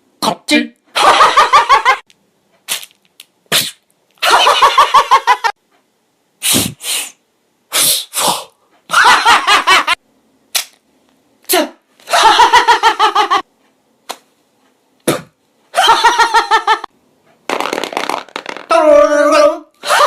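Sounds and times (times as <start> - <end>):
man making mouth sound effects: 3.5 - 3.8, 6.4 - 8.6.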